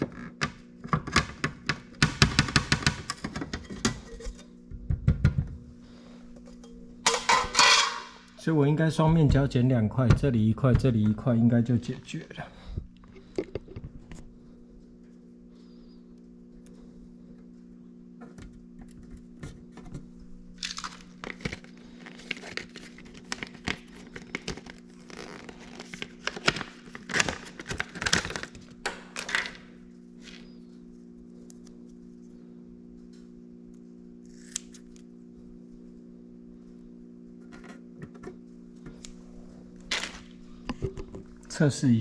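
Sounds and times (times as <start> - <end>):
steady low hum: 0.0 - 42.0
tape crinkling and tearing: 20.6 - 29.6.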